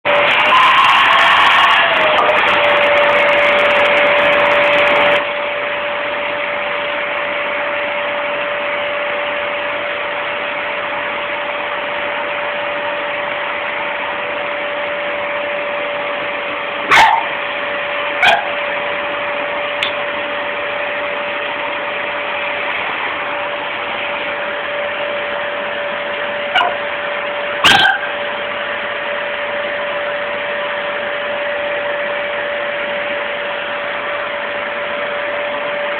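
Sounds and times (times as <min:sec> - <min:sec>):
vacuum cleaner running: 0:00.0 - 0:35.9
dog barking: 0:16.9 - 0:17.3, 0:18.2 - 0:18.6, 0:26.5 - 0:26.8, 0:27.6 - 0:28.1.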